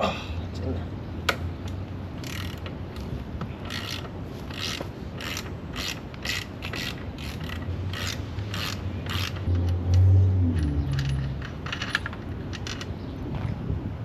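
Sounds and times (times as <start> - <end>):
ratchet wrench ratcheting: 2.2 - 2.7, 3.6 - 12.9.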